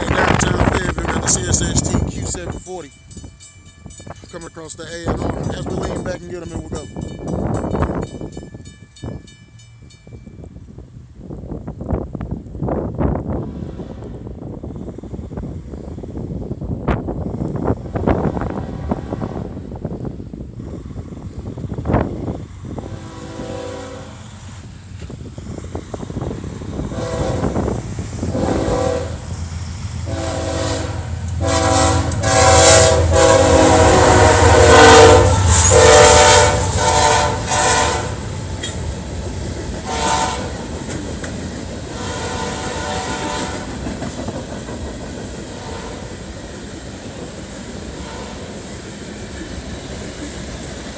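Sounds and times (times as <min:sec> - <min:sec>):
locomotive engine rumble: 0:00.0 - 0:50.9
train rolling by: 0:00.0 - 0:50.9
locomotive air horn blasts: 0:22.8 - 0:24.2, 0:26.9 - 0:29.2, 0:30.1 - 0:38.3, 0:39.8 - 0:40.6, 0:41.9 - 0:43.8, 0:45.6 - 0:46.0.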